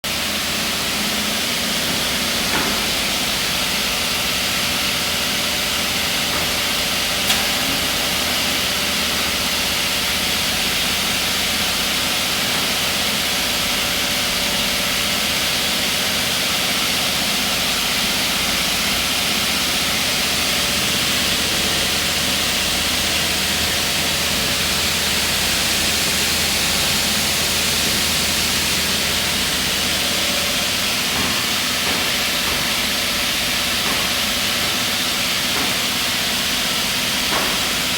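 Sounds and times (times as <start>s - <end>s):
saw machine whirring: 0.1s - 37.3s.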